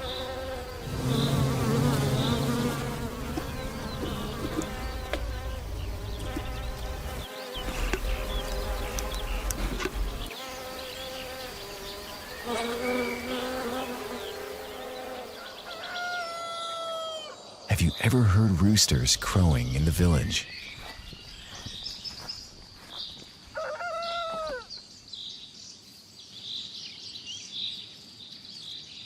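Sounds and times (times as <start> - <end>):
honeybees buzzing: 0.0 - 16.5.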